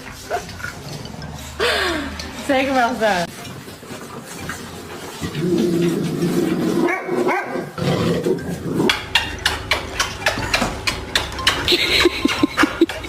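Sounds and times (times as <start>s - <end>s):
dog growling: 5.1s - 11.1s.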